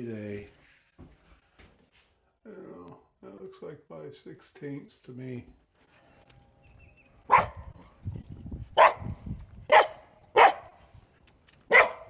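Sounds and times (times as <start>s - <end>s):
dog barking: 7.3s - 7.8s, 8.8s - 10.8s, 11.7s - 12.0s.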